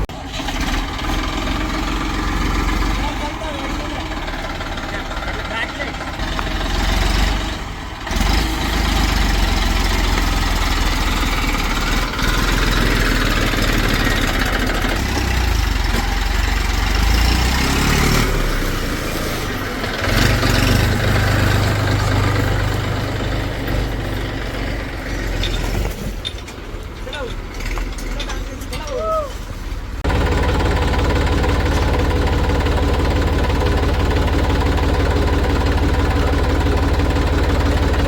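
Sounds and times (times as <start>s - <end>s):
heavy diesel engine running: 0.0s - 38.0s.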